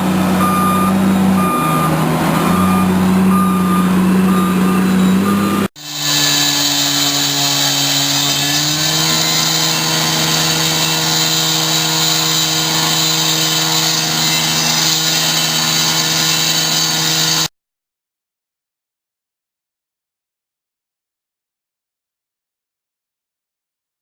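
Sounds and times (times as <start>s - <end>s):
heavy machinery droning: 0.0s - 17.5s.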